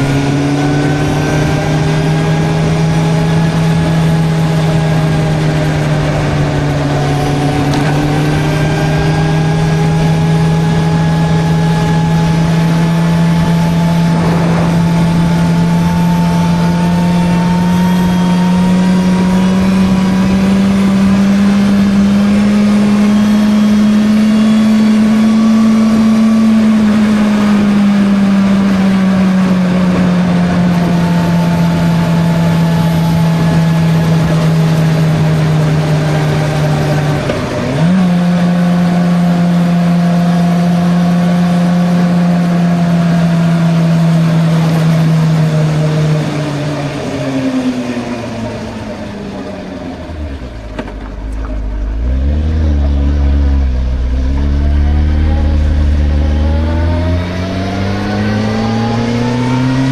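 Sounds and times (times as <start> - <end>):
wind noise: 0.0 - 39.2
motorcycle engine cruising: 0.0 - 59.9.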